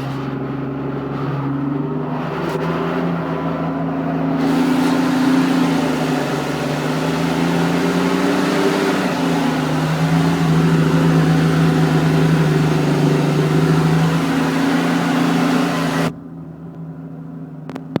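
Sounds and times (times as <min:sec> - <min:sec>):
tractor diesel engine under load: 0:00.0 - 0:16.3.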